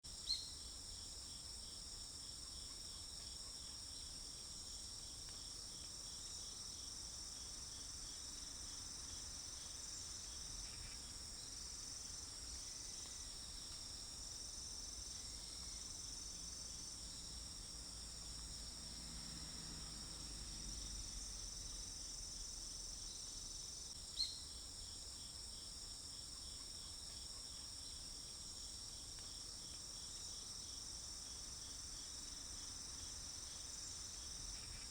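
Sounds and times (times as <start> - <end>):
crickets trilling: 2.5 - 34.9.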